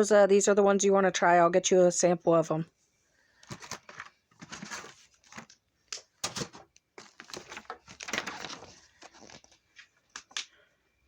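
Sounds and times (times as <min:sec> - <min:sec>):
packaging rustling and crinkling: 0:03.4 - 0:10.5.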